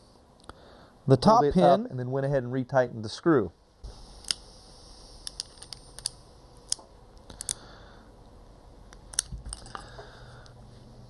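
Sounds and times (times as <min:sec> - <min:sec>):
metallic clicks of revolver parts: 0:05.2 - 0:07.7, 0:08.9 - 0:09.9.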